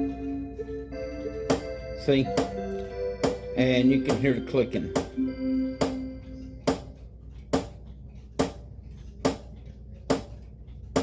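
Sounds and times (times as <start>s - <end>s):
held musical note: 0.0s - 6.8s
clock mechanism clicking: 1.2s - 11.0s.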